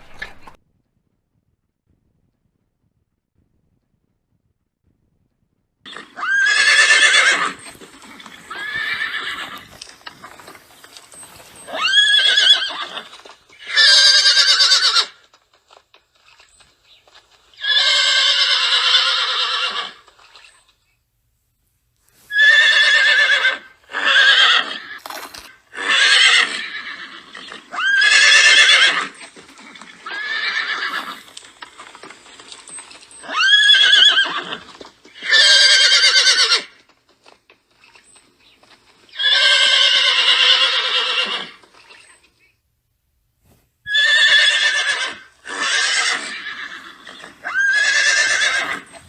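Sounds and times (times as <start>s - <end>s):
horses whinnying: 5.9s - 20.7s, 22.3s - 36.9s, 37.7s - 42.3s, 43.9s - 49.0s.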